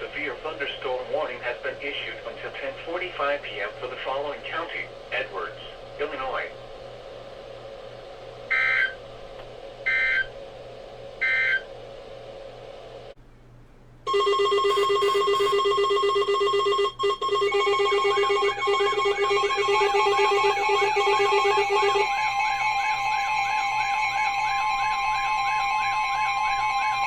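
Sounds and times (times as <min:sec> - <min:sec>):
electronic music with warbling tones: 0:18.2 - 0:27.0.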